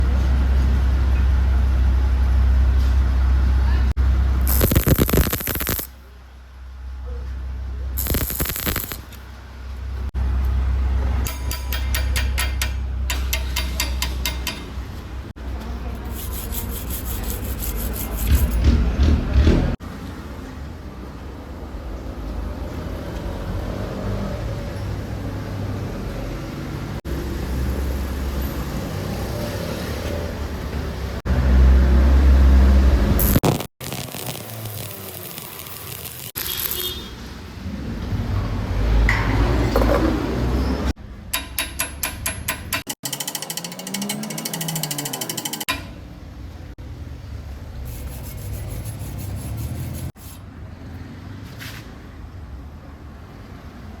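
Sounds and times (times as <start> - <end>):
welder hum: 4.4 - 5.9, 8.0 - 9.2, 33.0 - 36.9
welding arc hiss and crackle: 4.4 - 5.9, 8.0 - 9.2, 33.2 - 37.1.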